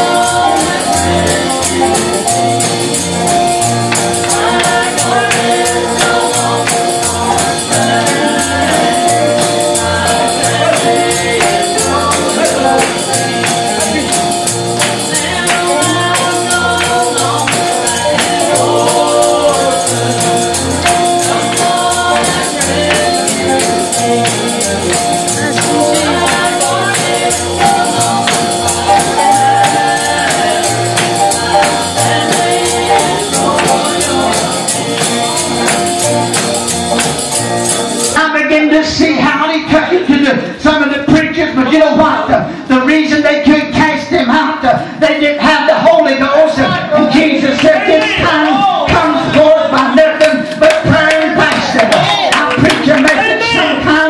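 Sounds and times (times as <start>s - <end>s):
pulsing bass line: 0.0s - 38.2s
tambourine shaking: 0.0s - 38.2s
voices singing gospel: 0.0s - 54.0s.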